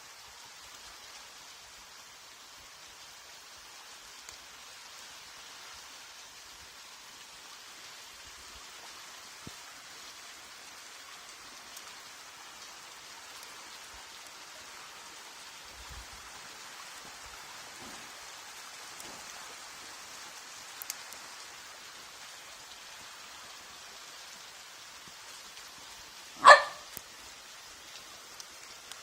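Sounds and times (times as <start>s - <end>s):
heavy rain falling: 0.0s - 29.0s.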